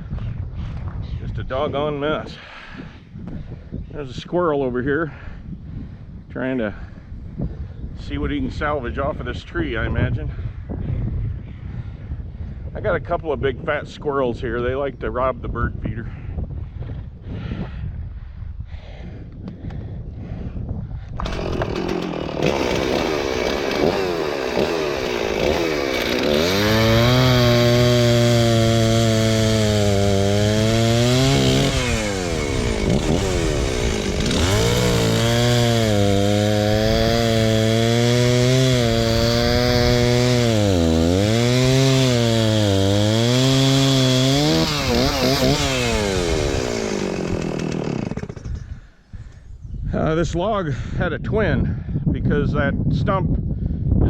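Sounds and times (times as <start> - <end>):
chainsaw cutting wood: 21.2 - 48.8.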